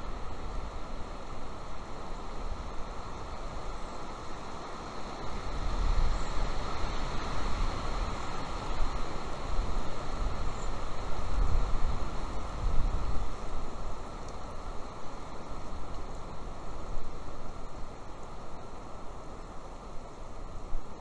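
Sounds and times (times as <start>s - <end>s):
wind buffeting microphone: 5.3s - 13.7s.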